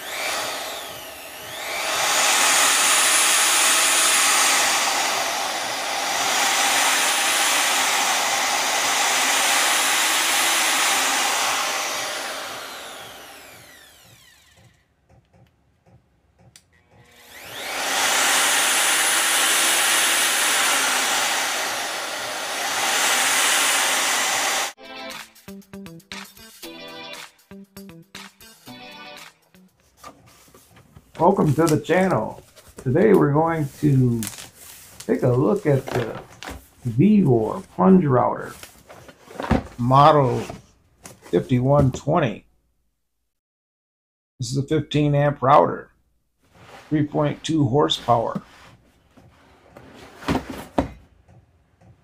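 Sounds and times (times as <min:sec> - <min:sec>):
router motor whining: 0:00.0 - 0:24.8.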